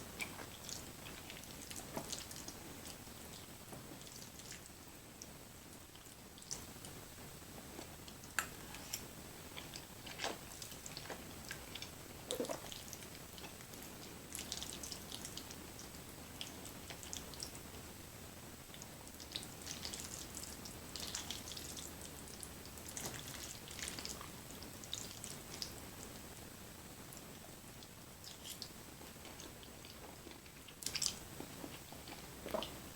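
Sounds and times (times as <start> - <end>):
person chewing food: 0.2 - 3.4, 7.7 - 15.5, 27.8 - 32.9.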